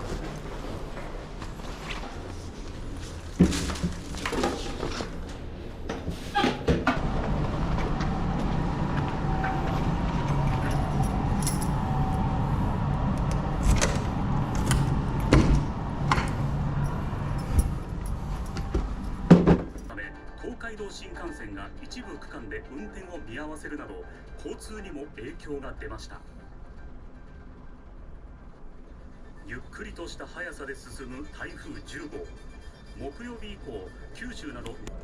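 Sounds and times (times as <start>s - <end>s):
steady hum: 0.0s - 19.9s
door and keys knocking and rattling: 16.8s - 19.9s.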